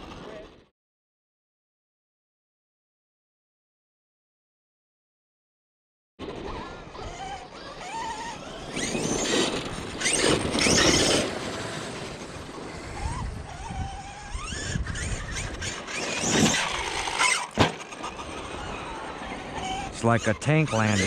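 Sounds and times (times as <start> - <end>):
tyres scrabbling on dirt: 6.3 - 21.0
electric motor whine: 6.5 - 21.0
thump of hard landing: 17.6 - 17.8.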